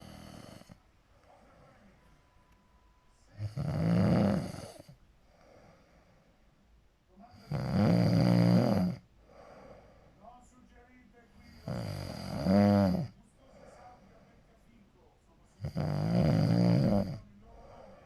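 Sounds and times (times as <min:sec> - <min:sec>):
loud snoring: 0:00.0 - 0:00.8, 0:03.4 - 0:05.0, 0:07.4 - 0:09.0, 0:11.5 - 0:13.2, 0:15.6 - 0:17.2.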